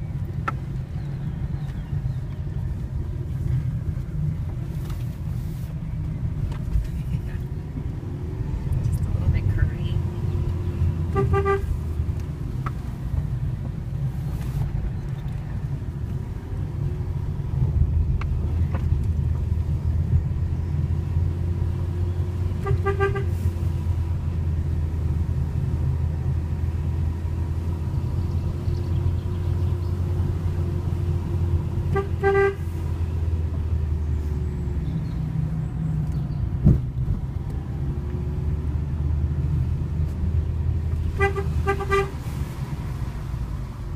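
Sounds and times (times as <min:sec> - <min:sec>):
car engine and tyres rumbling: 0:00.0 - 0:43.9
car horn toots: 0:11.1 - 0:11.8, 0:22.6 - 0:23.4, 0:31.9 - 0:32.7, 0:41.1 - 0:42.2.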